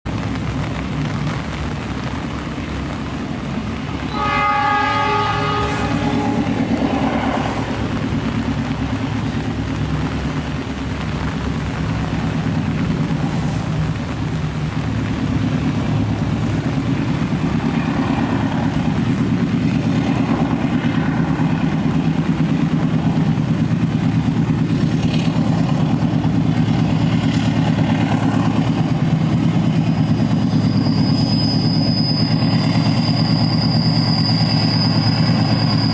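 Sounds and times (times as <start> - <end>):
train rumbling over bridge: 0.1 - 35.9
train horn blast: 3.9 - 8.7.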